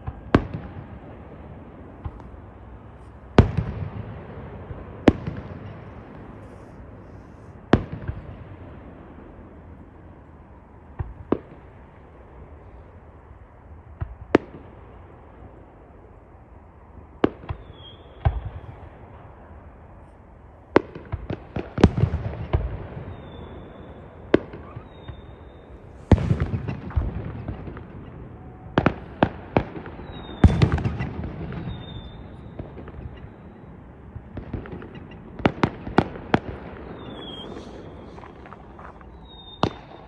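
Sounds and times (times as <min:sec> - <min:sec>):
fireworks whistling: 0:17.5 - 0:18.6, 0:23.0 - 0:33.8, 0:34.7 - 0:40.0
fireworks banging: 0:25.9 - 0:40.0
fireworks crackling: 0:25.9 - 0:40.0.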